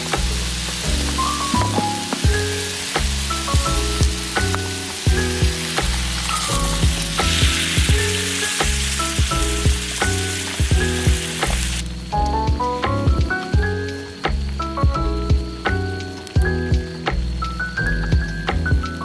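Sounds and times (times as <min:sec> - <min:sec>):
background music with beat: 0:00.0 - 0:19.0
food sizzling in a pan: 0:00.3 - 0:11.8.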